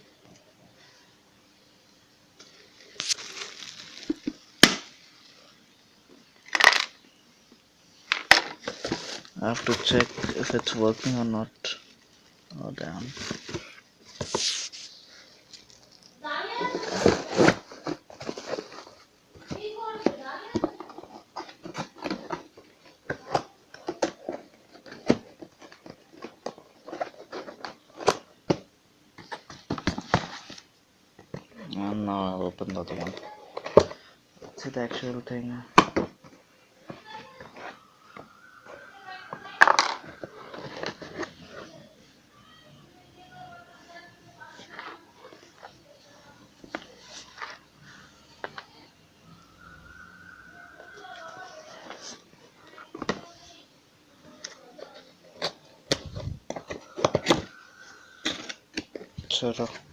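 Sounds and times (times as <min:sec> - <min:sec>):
kettle rustle: 0:02.4 - 0:04.4, 0:08.1 - 0:28.2.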